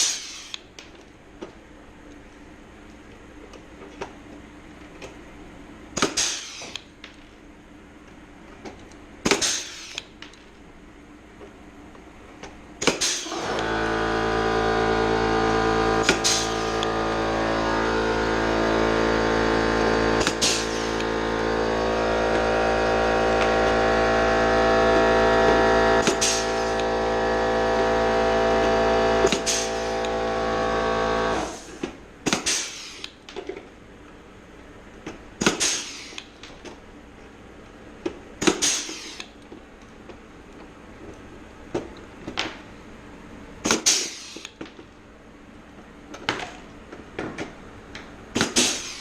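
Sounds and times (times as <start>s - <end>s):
electric motor humming: 13.3s - 31.7s.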